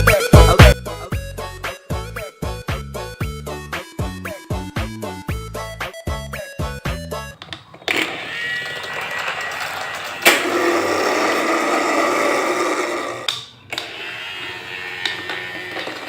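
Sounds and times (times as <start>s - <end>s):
small electric motor whirring: 7.9s - 16.0s.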